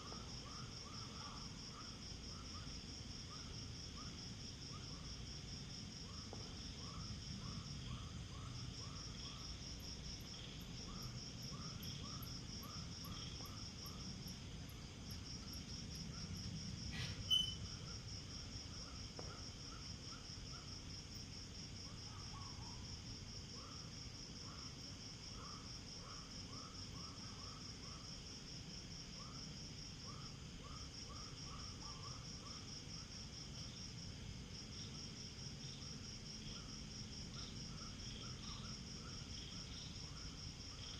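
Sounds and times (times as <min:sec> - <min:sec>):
cricket trill: 0:00.0 - 0:40.9
short lower insect chirps: 0:16.9 - 0:18.0.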